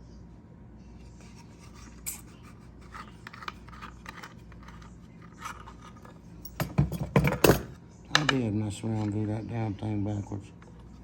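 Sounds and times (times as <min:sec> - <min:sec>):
parts clicking and scraping: 0:01.2 - 0:09.3.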